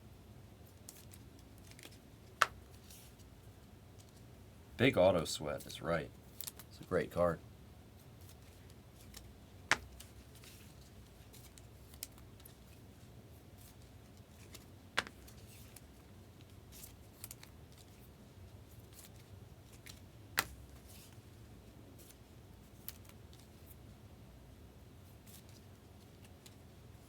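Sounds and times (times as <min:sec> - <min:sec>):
cards sliding and rustling: 0:00.8 - 0:03.3, 0:08.2 - 0:12.8, 0:13.5 - 0:18.1, 0:18.8 - 0:21.3.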